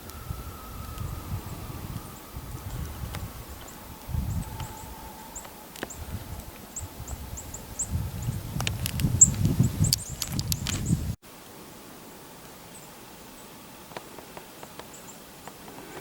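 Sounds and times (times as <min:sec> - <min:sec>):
low rumbling noise: 0:00.0 - 0:11.2
small birds chipping: 0:00.8 - 0:11.2.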